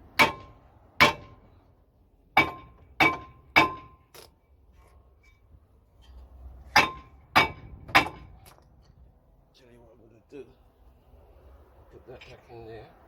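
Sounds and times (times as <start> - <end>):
hammer striking steel disc: 2.4 - 4.0, 6.8 - 8.4.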